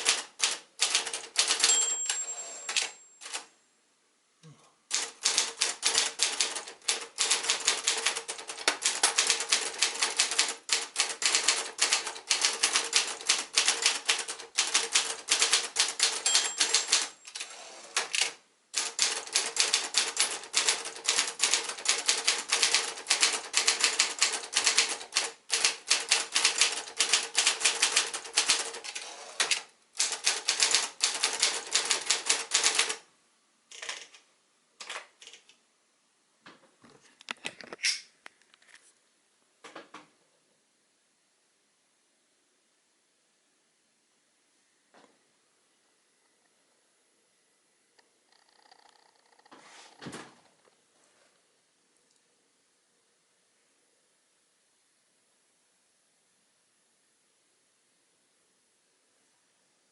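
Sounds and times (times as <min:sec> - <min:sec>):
typewriter keys clacking: 0:00.0 - 0:03.5, 0:04.9 - 0:33.0, 0:33.7 - 0:34.2.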